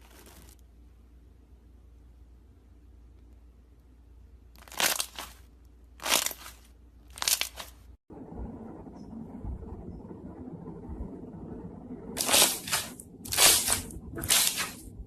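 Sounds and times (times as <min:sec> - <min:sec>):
crunchy slime squeezed: 0:04.6 - 0:05.4, 0:06.0 - 0:07.8.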